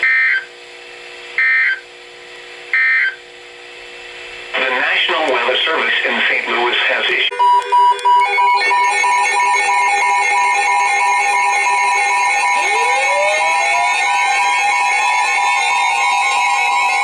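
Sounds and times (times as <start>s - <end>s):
emergency alert tones: 4.6s - 17.0s
rising tone: 7.3s - 17.0s.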